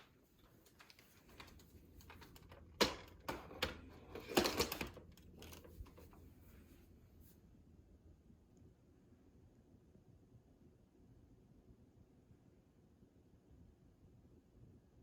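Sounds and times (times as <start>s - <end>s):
objects clicking and knocking: 0.6s - 6.2s.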